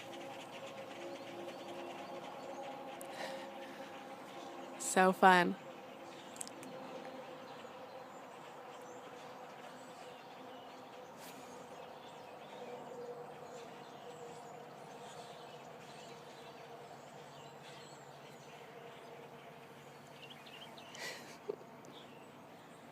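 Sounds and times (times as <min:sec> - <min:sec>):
flock of birds chirping: 0:00.0 - 0:22.9.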